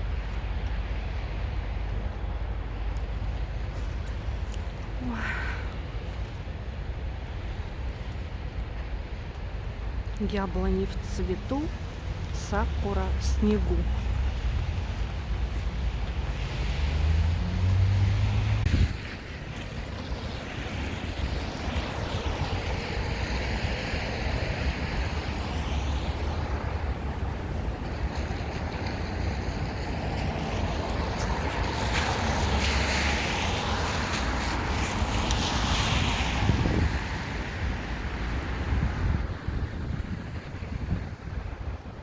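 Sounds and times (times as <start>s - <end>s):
wind gusting on microphone: 11.5s - 42.0s.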